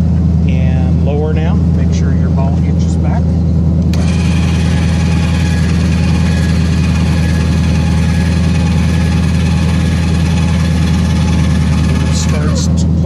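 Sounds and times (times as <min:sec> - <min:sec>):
steady low hum: 0:00.0 - 0:13.0
electric jack motor running: 0:03.8 - 0:13.0.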